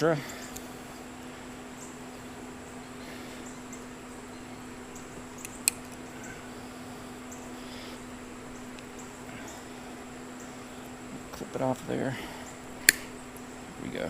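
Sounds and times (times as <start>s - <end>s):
steady low hum: 0.0s - 14.0s
faint high chirps: 1.7s - 10.9s
sharp click: 12.8s - 13.1s.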